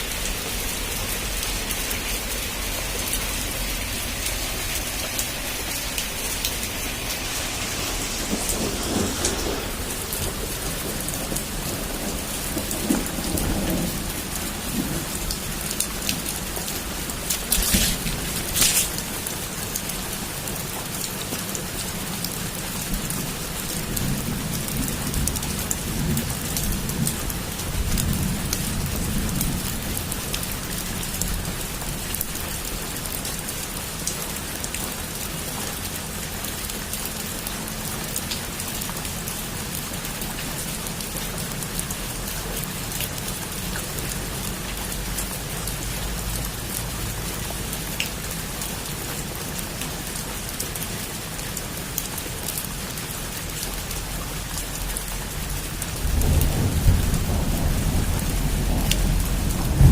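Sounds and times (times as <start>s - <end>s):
heavy rain: 0.0s - 59.9s
thunder rumble: 2.4s - 20.0s, 55.9s - 59.9s.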